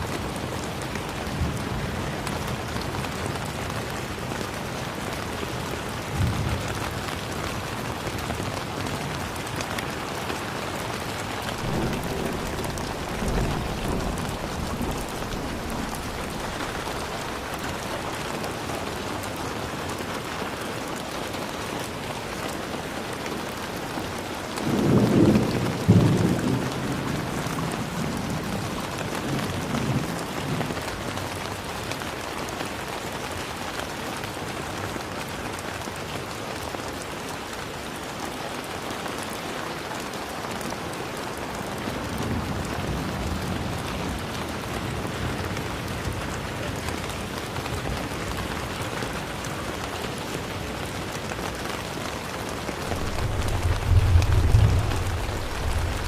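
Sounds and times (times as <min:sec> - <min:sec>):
steady rain: 0:00.0 - 0:56.0
thunder rumble: 0:11.3 - 0:18.9, 0:52.5 - 0:56.0.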